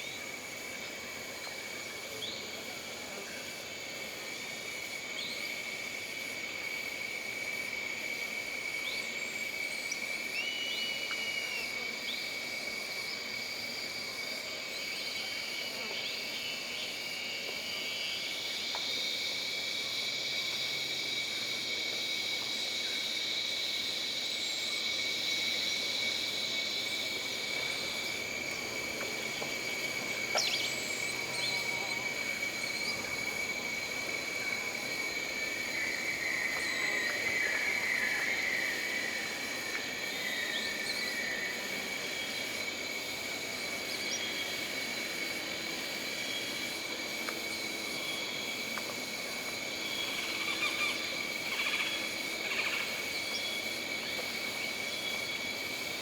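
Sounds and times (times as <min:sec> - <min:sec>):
high insect drone: 0:00.0 - 0:56.0.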